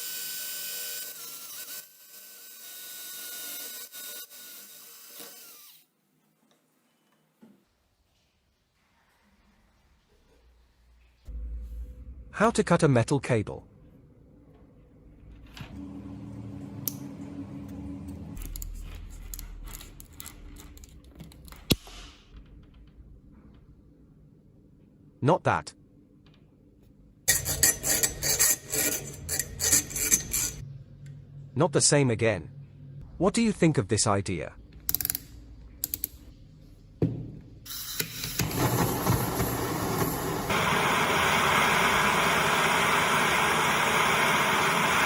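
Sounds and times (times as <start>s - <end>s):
electric drill drilling into metal: 0.0s - 5.9s.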